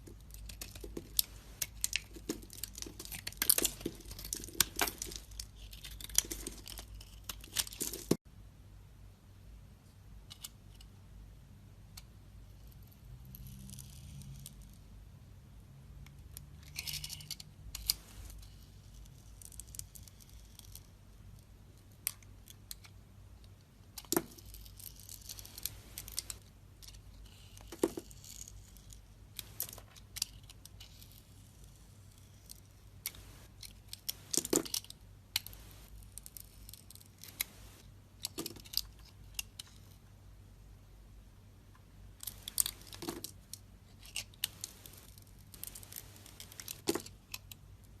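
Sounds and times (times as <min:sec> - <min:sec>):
knife carving soap: 0:00.1 - 0:08.2, 0:16.8 - 0:20.9, 0:23.9 - 0:37.4.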